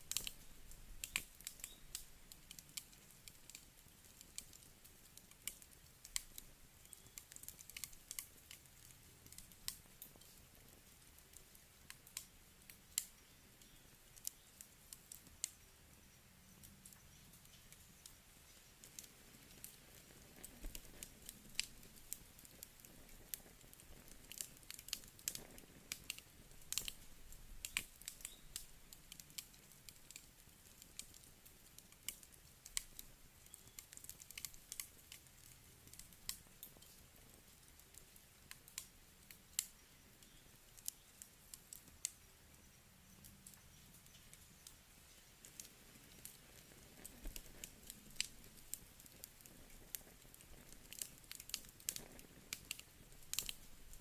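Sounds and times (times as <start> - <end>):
low rumble of burning: 0.0 - 54.0
wood fire crackling: 0.0 - 54.0.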